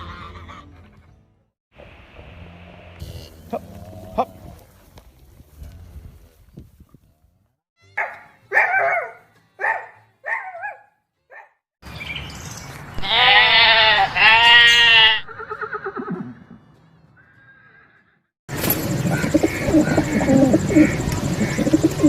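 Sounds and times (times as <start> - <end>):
animal calls: 18.7 - 22.0.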